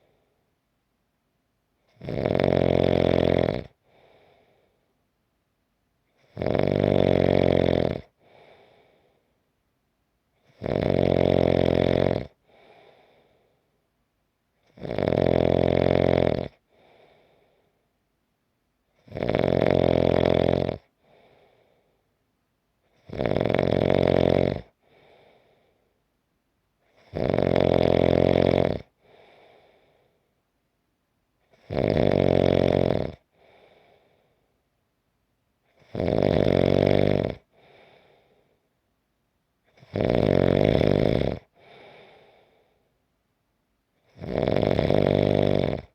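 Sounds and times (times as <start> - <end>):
person snoring: 1.9 - 4.6, 6.2 - 9.1, 10.4 - 13.4, 14.7 - 17.6, 19.0 - 21.7, 22.9 - 25.7, 26.9 - 30.0, 31.5 - 34.2, 35.7 - 38.3, 39.7 - 42.7, 44.0 - 45.9
faint breath out: 3.8 - 5.0, 8.2 - 9.4, 12.4 - 13.8, 16.7 - 17.8, 21.0 - 22.1, 24.8 - 26.0, 29.0 - 30.3, 33.3 - 34.5, 37.5 - 38.7, 41.5 - 42.9.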